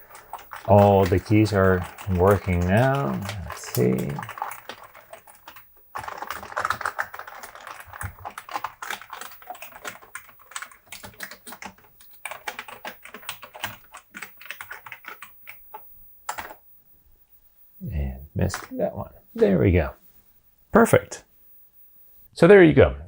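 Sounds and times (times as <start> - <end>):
keyboard typing: 0.0 - 16.6, 17.9 - 19.6.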